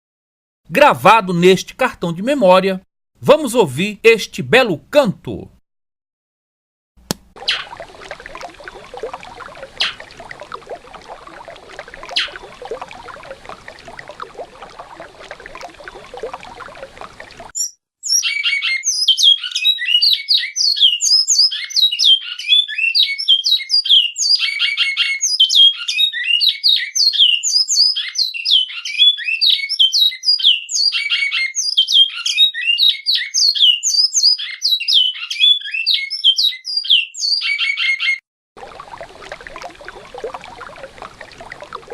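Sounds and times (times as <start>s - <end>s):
river water running: 7.1s - 17.6s, 38.6s - 41.9s
bird song whistled notes: 17.6s - 38.2s.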